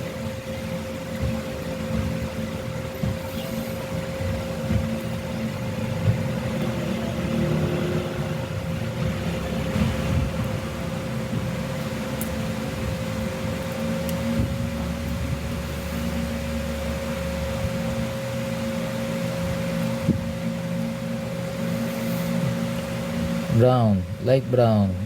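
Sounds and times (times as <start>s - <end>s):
steady machine hum: 0.0s - 25.0s.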